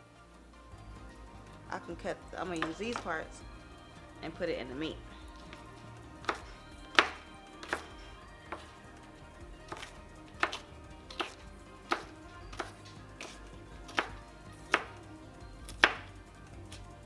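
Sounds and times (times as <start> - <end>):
knife chopping on cutting board: 6.2 - 8.7, 9.7 - 15.0, 15.7 - 16.0.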